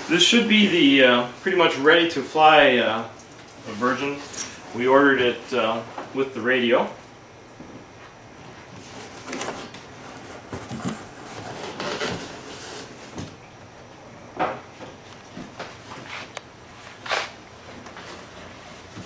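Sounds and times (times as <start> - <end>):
cardboard box scraping and rustling: 8.8 - 13.2.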